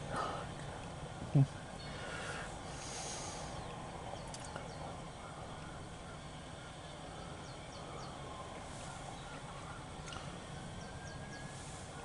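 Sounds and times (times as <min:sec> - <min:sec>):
low outdoor rumble: 0:00.0 - 0:12.0
bird chirps: 0:03.4 - 0:12.0.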